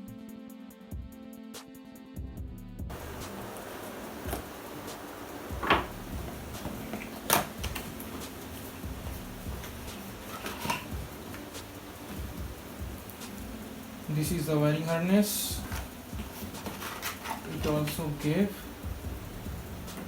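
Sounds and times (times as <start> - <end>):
packaging knocks and rustles: 2.9 - 12.3, 15.6 - 18.4
steady low hum: 2.9 - 20.0.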